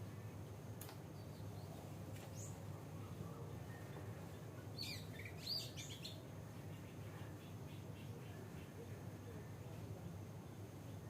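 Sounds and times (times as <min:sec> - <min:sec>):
magpie robin singing: 0:04.8 - 0:06.2.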